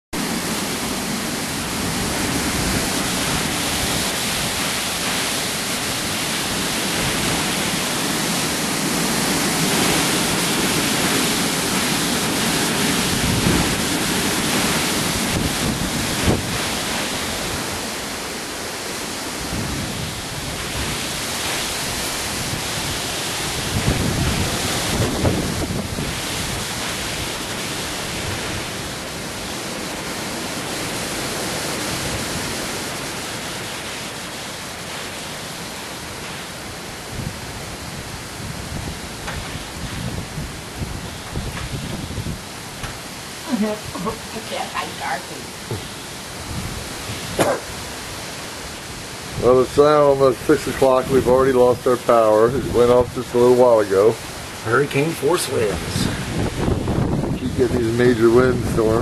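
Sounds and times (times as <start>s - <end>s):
wind buffeting microphone: 0.2s - 33.2s, 35.6s - 59.0s
strong gusting wind: 0.2s - 59.0s
sharp knocks: 47.4s - 47.7s.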